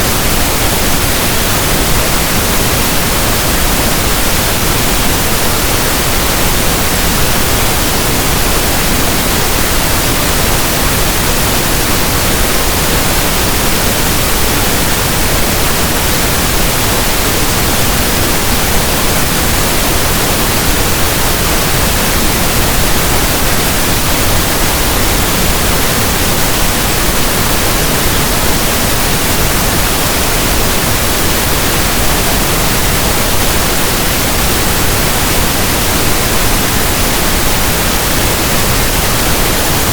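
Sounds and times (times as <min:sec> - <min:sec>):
steady static hiss: 0:00.0 - 0:39.9.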